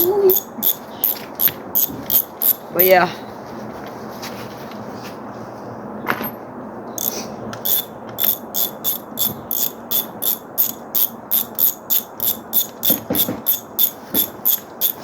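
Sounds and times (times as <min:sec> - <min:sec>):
ratchet wrench clicking: 0:00.0 - 0:02.9, 0:07.0 - 0:15.0.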